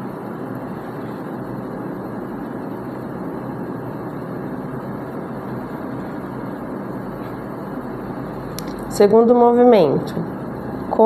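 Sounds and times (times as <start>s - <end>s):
steady background noise: 0.0s - 11.0s.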